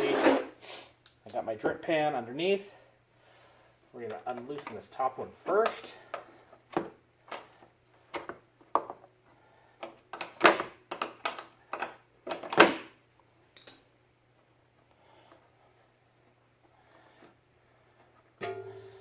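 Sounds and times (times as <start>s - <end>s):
faint steady hum: 0.0s - 19.0s
wrench clinking on metal fitting: 13.6s - 13.9s.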